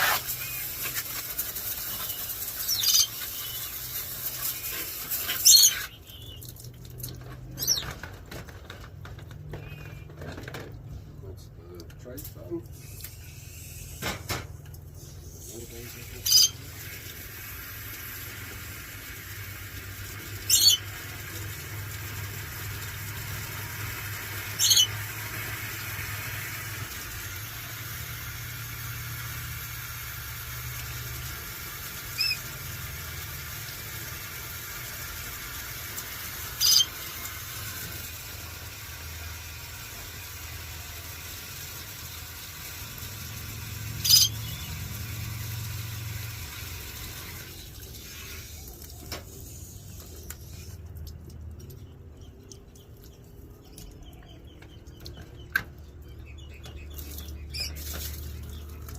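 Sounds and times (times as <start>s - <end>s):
parrot squawking: 2.6s - 3.7s, 5.2s - 6.4s, 7.6s - 7.9s, 16.2s - 16.7s, 20.4s - 20.9s, 24.5s - 25.0s, 32.1s - 32.5s, 36.5s - 37.1s, 44.0s - 44.7s.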